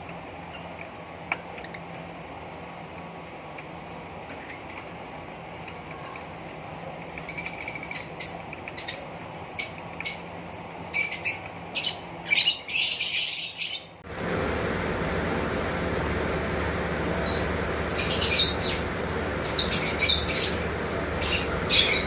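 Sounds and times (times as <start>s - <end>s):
lovebirds chirping: 7.2s - 22.0s
steady low hum: 14.0s - 22.0s.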